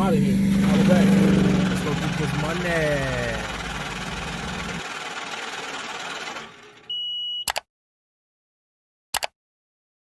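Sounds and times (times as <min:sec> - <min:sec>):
sharp clicks: 0:09.2 - 0:09.4.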